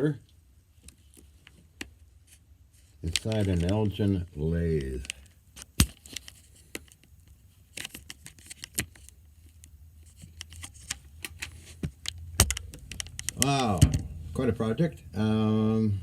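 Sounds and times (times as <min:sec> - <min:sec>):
objects clicking and rattling: 0:07.7 - 0:14.4
faint low hum: 0:08.9 - 0:16.0
sharp knock: 0:13.6 - 0:14.5.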